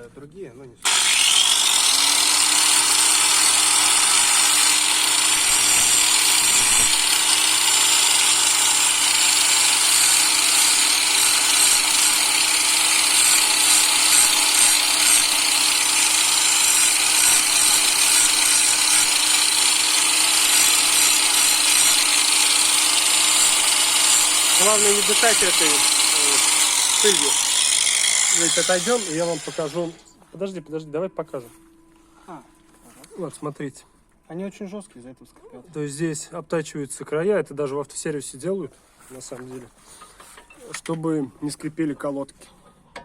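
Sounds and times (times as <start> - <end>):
power tool grinding: 0.8 - 30.0.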